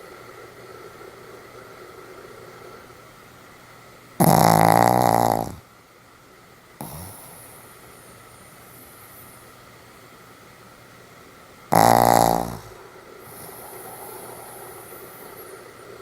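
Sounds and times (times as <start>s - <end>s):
dog snoring: 4.2s - 5.7s, 6.8s - 7.8s, 11.7s - 15.7s
faint dog breath: 12.6s - 16.0s.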